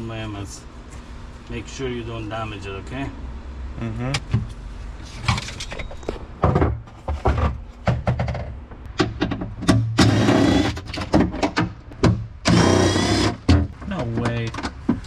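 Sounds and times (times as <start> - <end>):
scraping on car parts: 4.4 - 15.0
knocks and thunks on car parts: 6.4 - 15.0.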